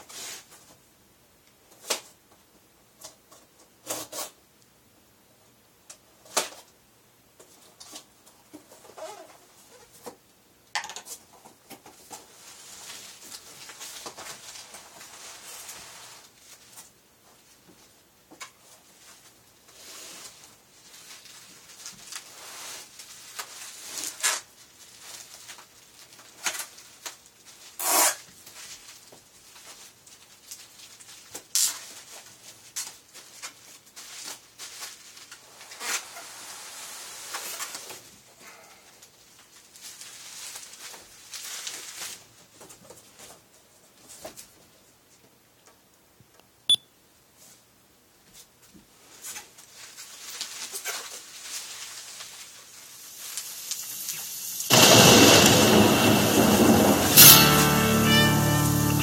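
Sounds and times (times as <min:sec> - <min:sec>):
packaging rustling and scraping: 0:19.0 - 0:38.2, 0:49.1 - 0:54.1
loud crackle: 0:53.3 - 0:59.0.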